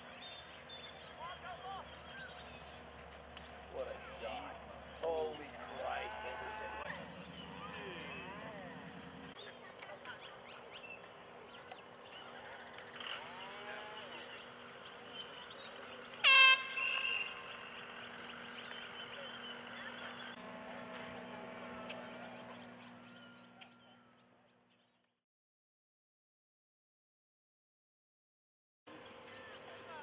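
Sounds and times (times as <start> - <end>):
air horn blast: 16.2 - 17.4, 20.4 - 22.4.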